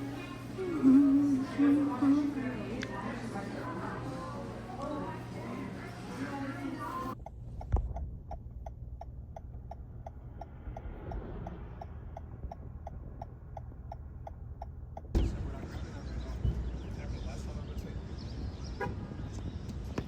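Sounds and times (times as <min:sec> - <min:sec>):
car cabin hum: 0:07.1 - 0:16.9
turn signal clicking: 0:07.2 - 0:15.3.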